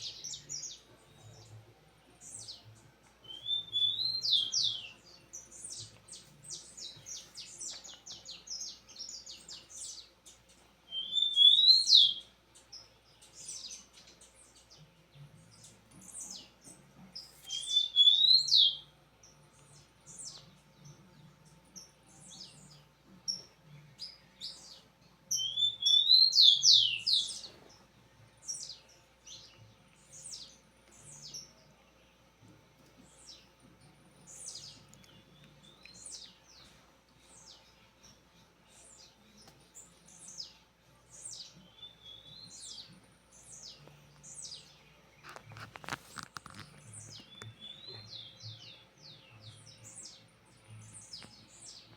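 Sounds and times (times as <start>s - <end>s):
songbird singing trill: 0.0s - 51.9s.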